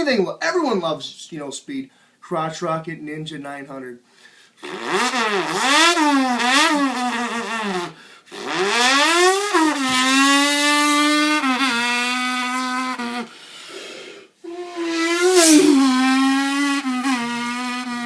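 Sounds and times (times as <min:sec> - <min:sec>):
man imitating motorcycle revs: 0:14.5 - 0:16.5.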